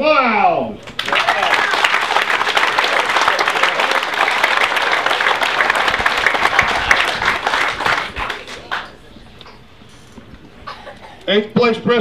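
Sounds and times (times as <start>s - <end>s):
crowd applauding: 0.9s - 9.1s.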